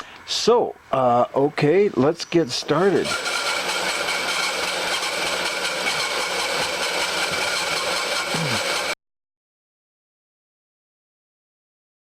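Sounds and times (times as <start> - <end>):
steady machine whine: 2.8 - 9.0
milling machine cutting: 2.9 - 9.0.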